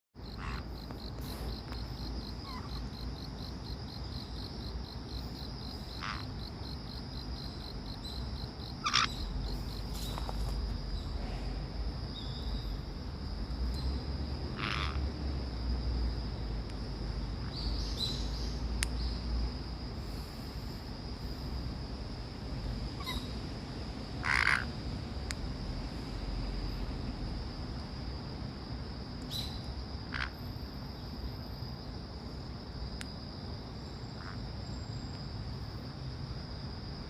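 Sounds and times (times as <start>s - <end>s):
high cricket-like trilling: 0.2s - 37.0s
parrot calls: 0.4s - 0.7s, 2.4s - 3.0s, 5.9s - 6.3s, 8.8s - 9.3s, 14.6s - 15.0s, 24.2s - 24.7s.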